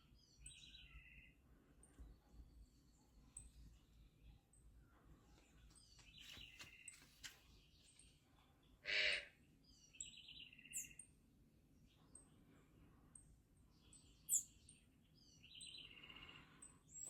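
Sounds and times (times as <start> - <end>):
birds chirping and trilling: 0.0 - 17.0
harsh bird call: 8.8 - 9.3.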